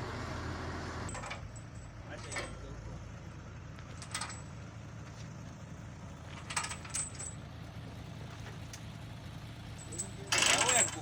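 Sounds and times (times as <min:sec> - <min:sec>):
heavy machine engine idling: 0:00.0 - 0:11.0
metallic clinks: 0:09.8 - 0:11.0.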